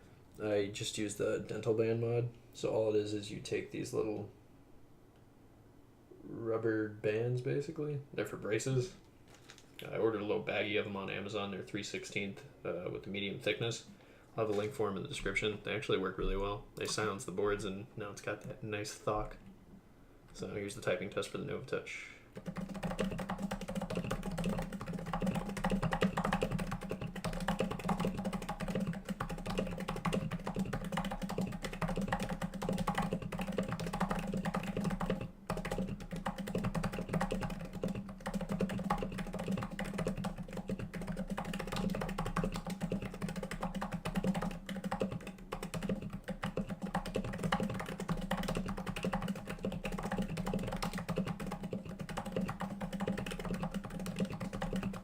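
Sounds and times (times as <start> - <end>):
fast typing on keyboard: 22.4 - 55.0.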